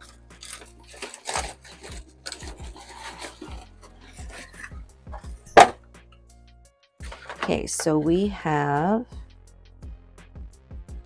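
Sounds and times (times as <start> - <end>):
cardboard package being opened: 0.0 - 4.8
scraping and rustling: 0.0 - 5.8.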